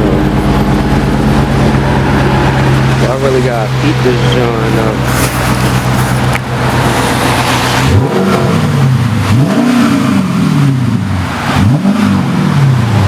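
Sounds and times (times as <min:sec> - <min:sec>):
car engine revving: 0:00.0 - 0:13.0.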